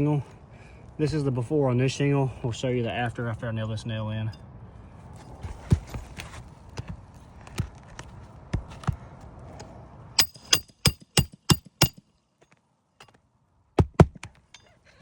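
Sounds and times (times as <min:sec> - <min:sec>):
hammer hitting nail: 0:10.2 - 0:12.0.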